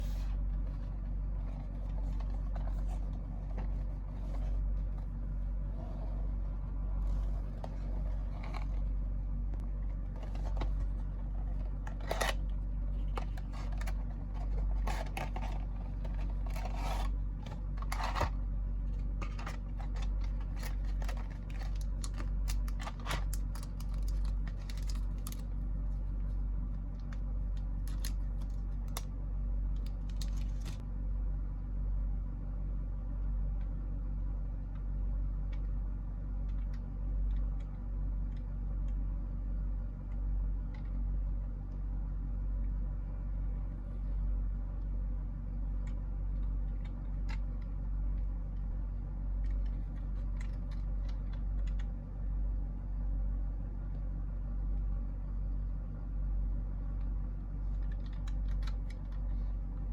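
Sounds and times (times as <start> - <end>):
cardboard and plastic packaging rustling: 0.0 - 6.3, 9.6 - 12.4, 13.0 - 18.4, 19.0 - 25.5, 27.0 - 29.0, 29.8 - 30.8
steady low hum: 0.0 - 59.9.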